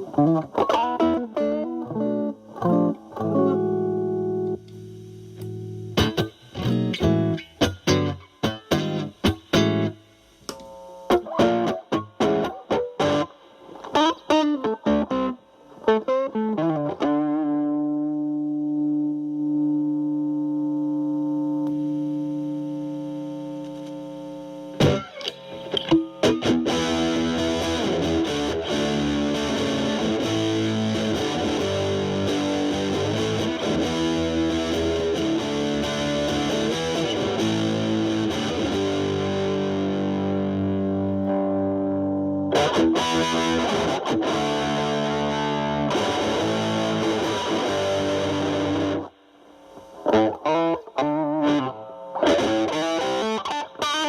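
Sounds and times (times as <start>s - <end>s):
distorted electric guitar: 0.0s - 54.0s
guitar chord ringing: 14.0s - 49.2s, 50.1s - 54.0s.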